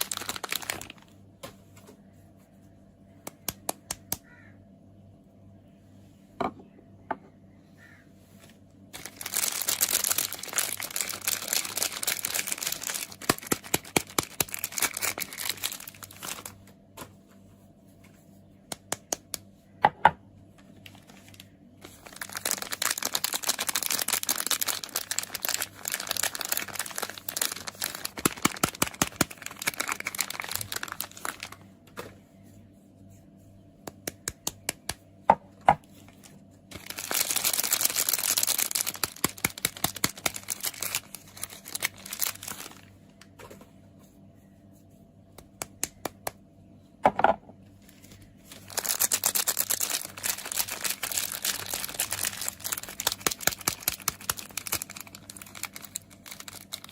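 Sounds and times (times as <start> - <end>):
packaging crinkling and tearing: 0.0 - 1.2, 8.9 - 16.8, 20.6 - 31.7, 35.8 - 43.0, 47.8 - 56.9.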